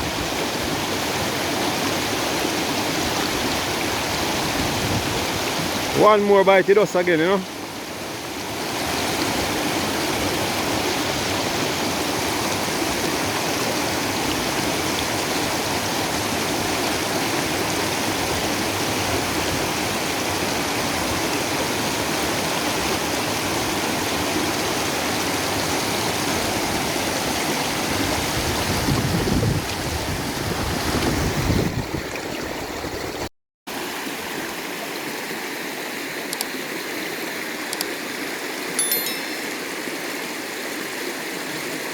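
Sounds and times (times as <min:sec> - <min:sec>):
river water rushing: 0:00.0 - 0:28.9.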